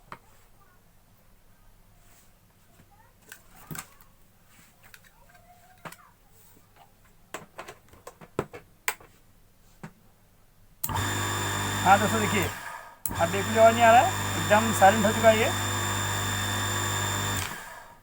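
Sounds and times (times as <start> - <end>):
water pump motor humming: 10.8 - 18.0.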